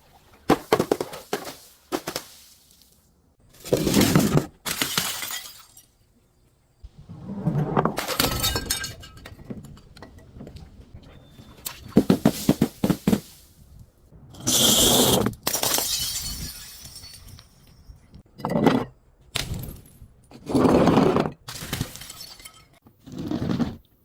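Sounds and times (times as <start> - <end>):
glass bottles breaking: 3.8 - 6.0, 8.0 - 9.5, 15.4 - 18.0, 21.5 - 22.8.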